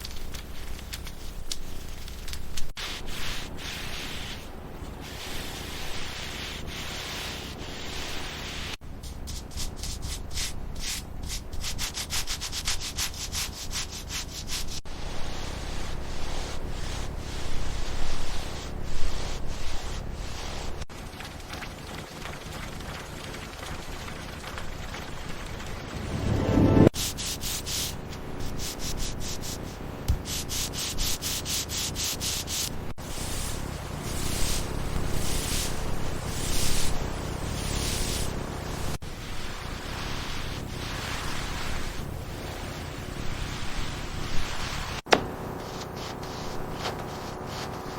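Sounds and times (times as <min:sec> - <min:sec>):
abrasive rubbing strokes: 0:02.8 - 0:10.0, 0:25.8 - 0:47.9.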